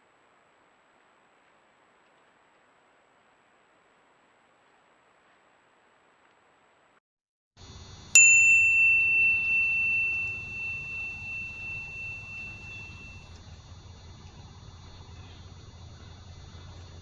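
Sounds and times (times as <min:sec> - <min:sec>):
faint background hiss: 0:00.0 - 0:07.0, 0:07.6 - 0:17.0
metallic strike ringing: 0:08.2 - 0:13.4.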